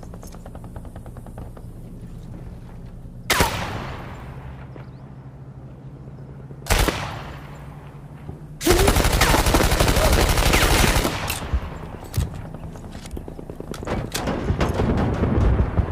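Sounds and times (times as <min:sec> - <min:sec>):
submachine gun firing: 0:06.7 - 0:07.4, 0:08.6 - 0:12.7.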